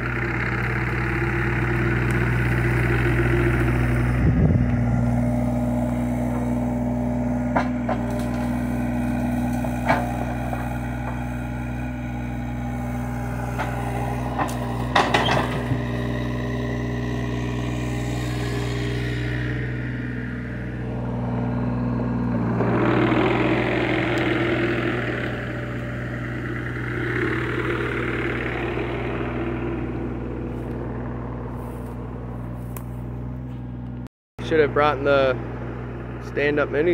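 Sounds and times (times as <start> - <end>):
diesel engine running: 0.0 - 36.9
sharp knocks and cracks: 7.4 - 11.3.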